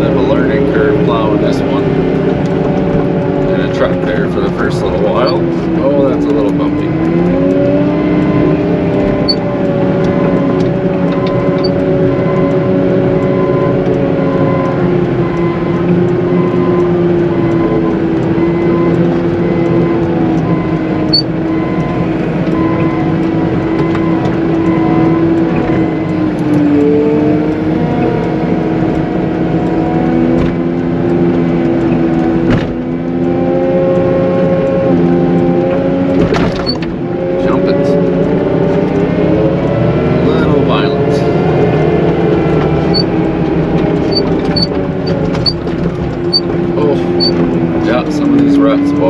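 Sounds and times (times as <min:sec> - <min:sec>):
diesel engine under load: 0:00.0 - 0:49.0.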